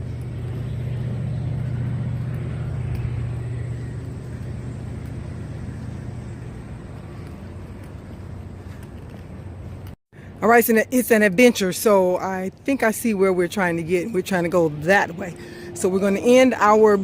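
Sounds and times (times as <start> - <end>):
deep hum: 0.0 - 9.7
low mechanical rumble: 0.0 - 10.0.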